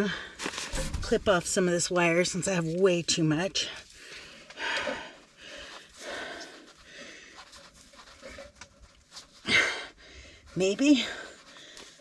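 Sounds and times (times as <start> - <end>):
wire handling noise: 0.4 - 2.8.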